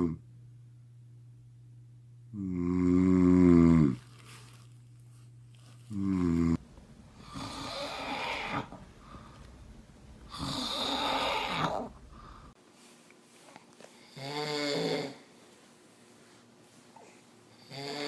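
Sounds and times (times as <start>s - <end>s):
man snoring: 2.3s - 4.0s, 6.0s - 6.6s, 7.2s - 9.4s, 10.2s - 12.5s, 14.1s - 15.2s, 17.6s - 18.0s.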